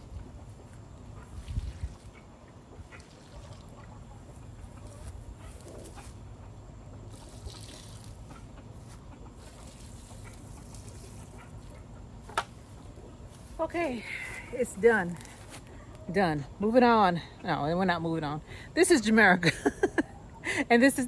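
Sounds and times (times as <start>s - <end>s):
water pouring onto soil: 7.1s - 8.4s, 9.4s - 11.7s.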